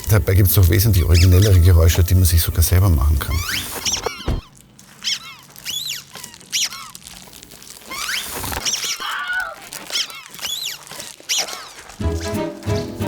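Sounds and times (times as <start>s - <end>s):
airy hiss: 0.0s - 4.0s
rubber chicken toy squeaking: 1.0s - 1.9s, 3.2s - 7.1s, 7.8s - 12.0s
low wavering squawk: 3.2s - 4.4s, 5.0s - 7.0s, 7.9s - 12.9s.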